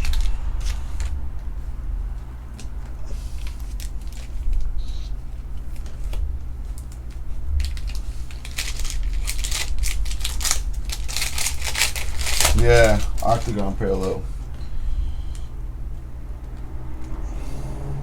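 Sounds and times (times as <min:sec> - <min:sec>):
foil wrappers crinkling: 0:00.0 - 0:01.2, 0:02.5 - 0:14.6
steady low hum: 0:00.0 - 0:18.0.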